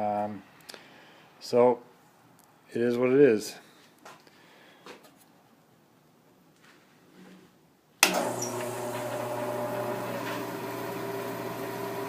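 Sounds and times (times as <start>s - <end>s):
bandsaw running: 8.1s - 12.0s.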